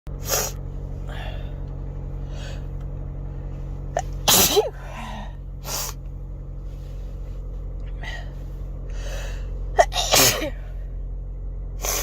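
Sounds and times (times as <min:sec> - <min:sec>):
car cabin hum: 0:00.1 - 0:12.0
person sneezing: 0:00.2 - 0:01.3, 0:04.0 - 0:06.0, 0:09.8 - 0:10.7
breaths and sniffs: 0:08.0 - 0:09.6.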